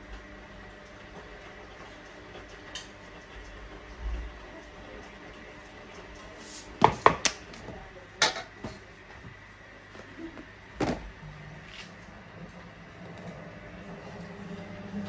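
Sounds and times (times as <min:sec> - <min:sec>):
cookware knocking and clattering: 0:08.2 - 0:08.8.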